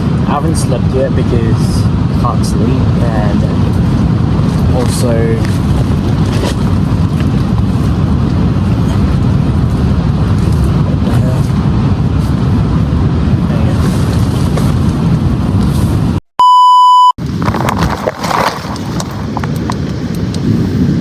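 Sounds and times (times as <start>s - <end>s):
wind buffeting microphone: 0.0s - 16.2s, 17.2s - 21.0s
electronic beep: 16.4s - 17.2s.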